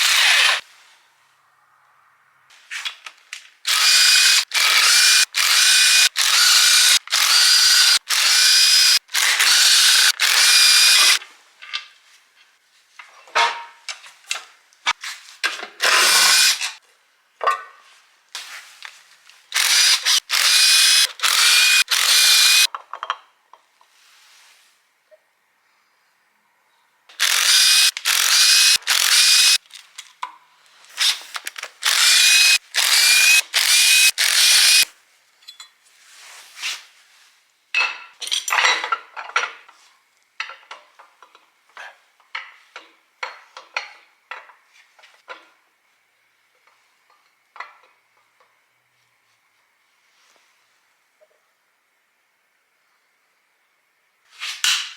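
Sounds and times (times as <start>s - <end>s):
power tool whining in bursts: 3.7s - 11.2s, 19.6s - 22.7s, 27.2s - 29.6s, 31.8s - 34.9s
hand tools clicking and knocking: 19.6s - 23.1s.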